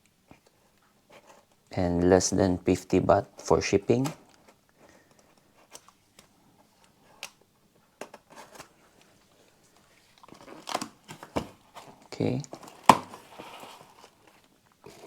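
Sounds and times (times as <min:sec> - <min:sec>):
packaging clicks and rustles: 0:08.0 - 0:15.0.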